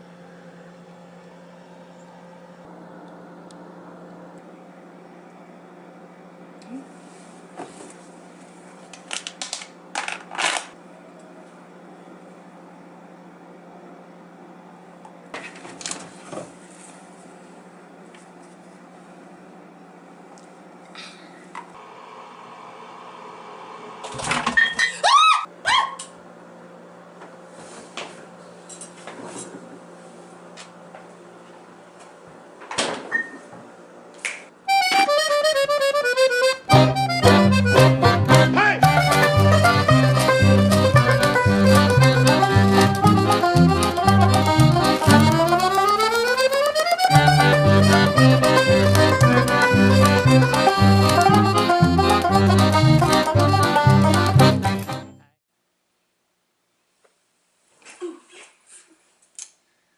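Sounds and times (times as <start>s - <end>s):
reedy instrument melody: 34.7s - 55.2s
upbeat music with bouncing bass: 36.7s - 45.8s, 47.1s - 55.1s.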